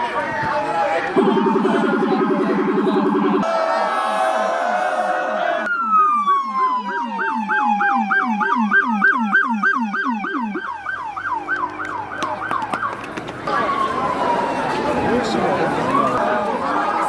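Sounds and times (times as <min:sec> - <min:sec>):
siren wailing and yelping: 0:01.2 - 0:03.6, 0:05.6 - 0:12.6.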